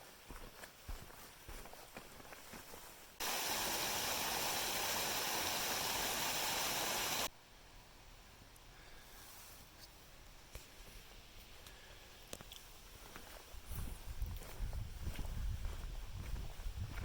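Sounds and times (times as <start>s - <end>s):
footsteps on dirt trail: 0.0s - 3.2s, 12.4s - 17.0s
rush of flowing water: 3.2s - 7.3s.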